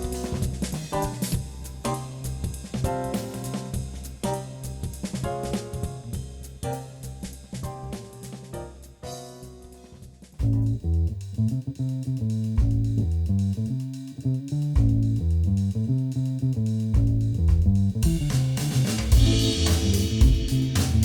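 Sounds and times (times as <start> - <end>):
bass and drums music: 0.0 - 21.0.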